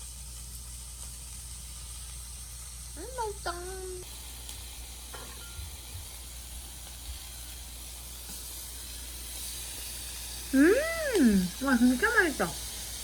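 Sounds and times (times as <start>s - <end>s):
steady hiss: 0.0s - 13.0s
person exclaiming: 10.6s - 11.9s.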